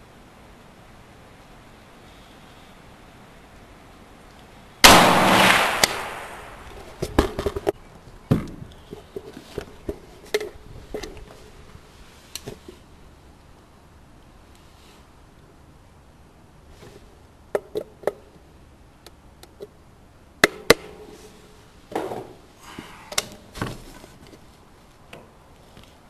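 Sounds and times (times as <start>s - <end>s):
rifle shot: 4.8s - 7.0s.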